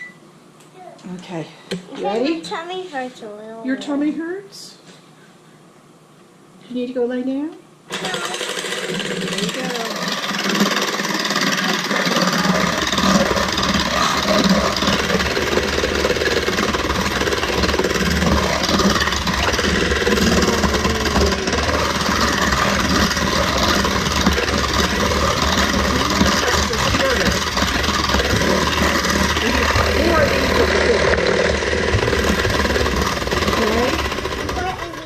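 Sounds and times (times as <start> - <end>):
electric mixer humming: 7.9 - 35.0.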